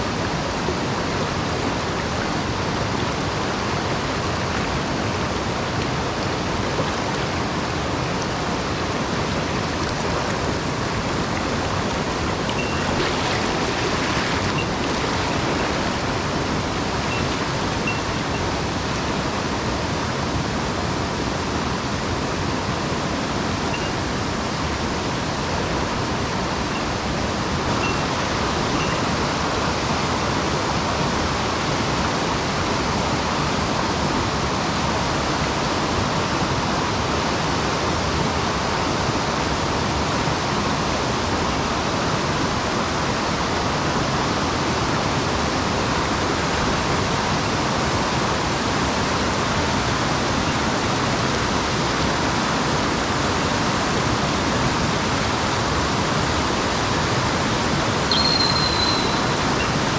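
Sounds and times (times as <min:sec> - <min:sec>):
stream water rushing over rocks: 0:00.0 - 0:59.9
faint high chirps: 0:58.1 - 0:59.9.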